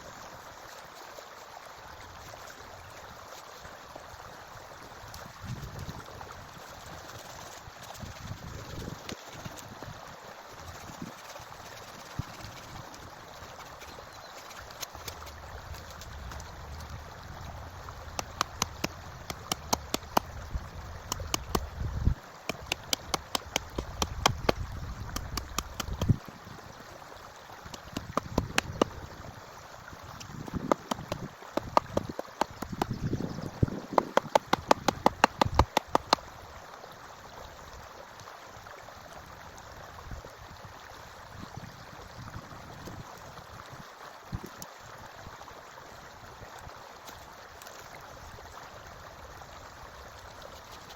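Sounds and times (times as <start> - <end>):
stream running: 0.0 - 50.9
sharp knocks: 30.6 - 32.9, 34.0 - 36.2.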